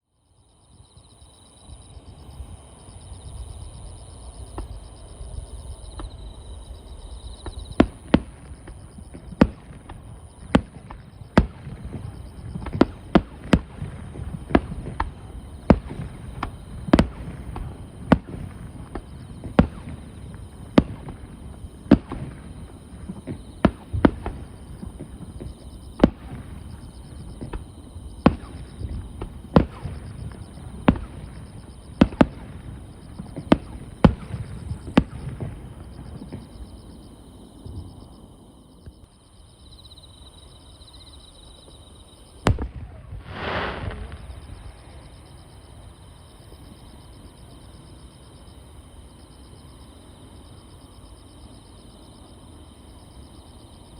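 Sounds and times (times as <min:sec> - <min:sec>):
insects trilling: 0:00.2 - 0:53.9
fireworks bangs: 0:07.4 - 0:38.0, 0:42.5 - 0:46.0.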